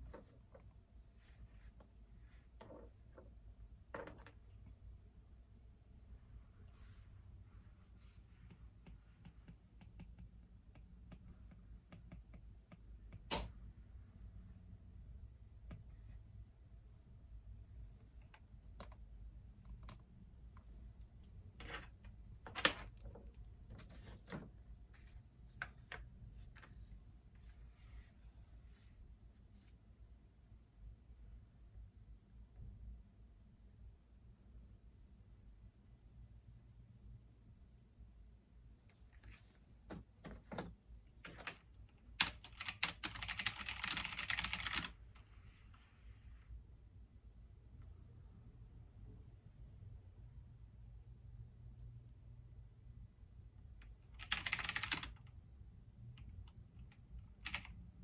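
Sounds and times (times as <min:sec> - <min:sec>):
low steady hum: 0:00.0 - 0:54.2
computer keyboard typing: 0:42.2 - 0:45.1, 0:54.0 - 0:55.4, 0:56.2 - 0:57.8.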